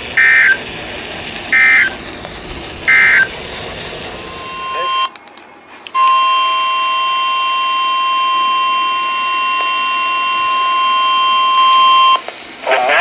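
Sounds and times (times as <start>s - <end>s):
steady alert tone: 1.5s - 5.1s.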